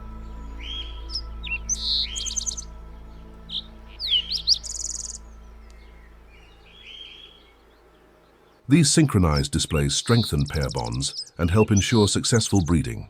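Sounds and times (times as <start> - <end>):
soft background music with drone: 0.0 - 8.4
birds chirping: 0.0 - 13.0
sweeping bird whistles: 0.6 - 2.7, 3.5 - 8.6.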